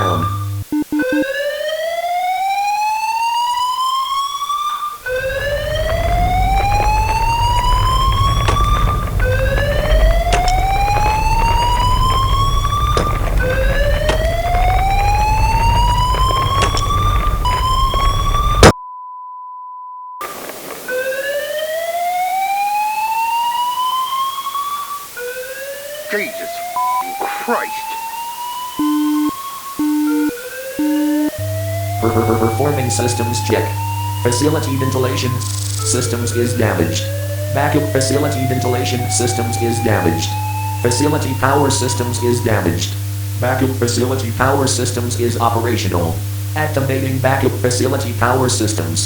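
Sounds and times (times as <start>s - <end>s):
rising whoop alarm: 1.0s - 18.8s, 25.2s - 42.8s
deep rumble: 5.0s - 18.8s, 31.4s - 38.4s
steady beep-like tone: 26.1s - 36.0s.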